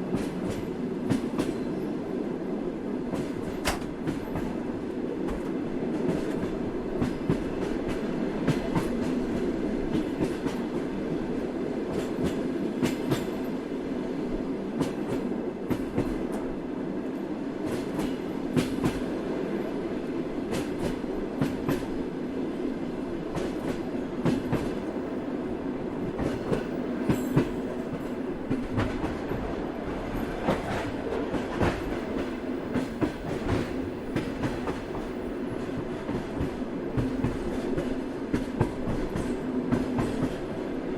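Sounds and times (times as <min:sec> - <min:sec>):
train rumbling along track: 0:00.0 - 0:40.9.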